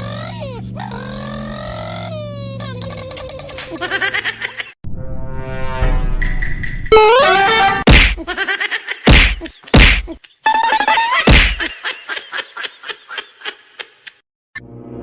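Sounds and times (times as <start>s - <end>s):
loud whacks: 7.8s - 8.3s, 9.1s - 10.1s, 11.3s - 11.7s.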